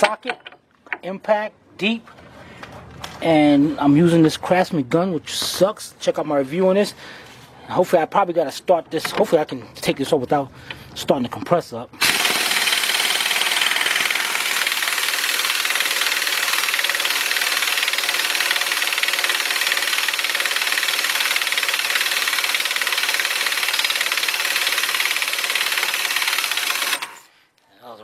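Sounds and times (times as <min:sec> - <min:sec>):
impact wrench hammering: 0:12.0 - 0:27.2.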